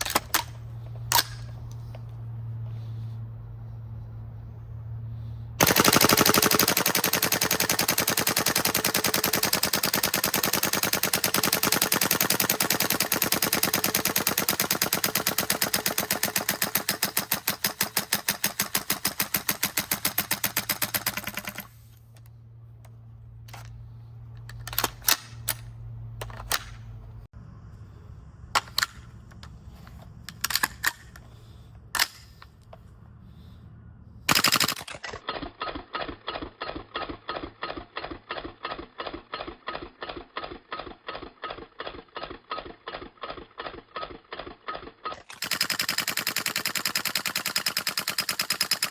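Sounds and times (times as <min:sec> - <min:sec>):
airsoft rifle full-auto clicks: 0:00.0 - 0:02.0, 0:05.6 - 0:22.3, 0:28.6 - 0:31.3, 0:34.3 - 0:48.9.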